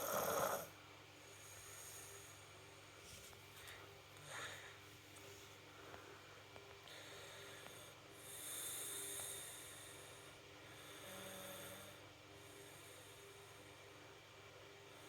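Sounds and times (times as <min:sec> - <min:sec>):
faint snoring: 0:00.0 - 0:00.8, 0:07.0 - 0:13.7
faint steady hum: 0:00.0 - 0:15.0.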